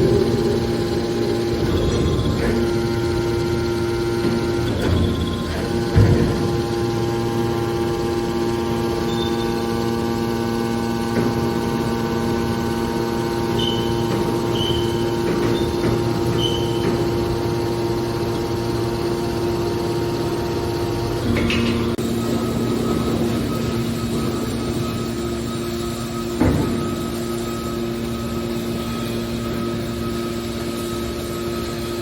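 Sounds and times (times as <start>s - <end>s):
machine clatter: 0.0s - 31.8s
hydraulic power unit humming: 0.0s - 32.0s
short high squeaks: 13.5s - 17.1s.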